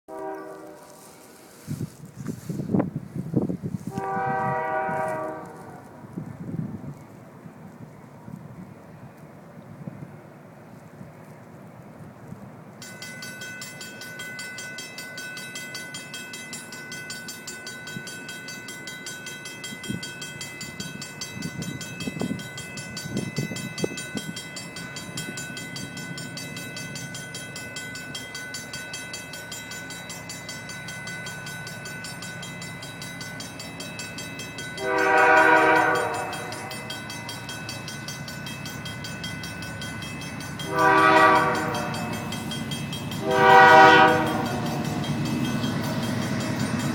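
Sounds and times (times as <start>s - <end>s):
locomotive air horn blast: 0.1s - 1.3s, 3.8s - 6.0s, 34.8s - 36.7s, 40.6s - 42.3s, 43.2s - 44.6s
train rumbling by: 0.1s - 46.9s
train clanks: 12.1s - 46.9s.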